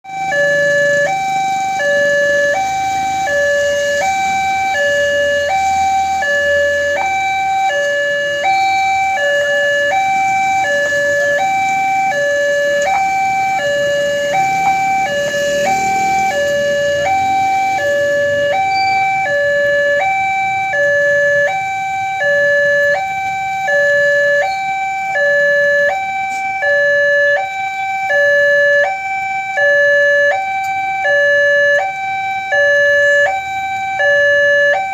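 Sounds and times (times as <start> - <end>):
two-tone level crossing alarm: 0.0 - 34.9.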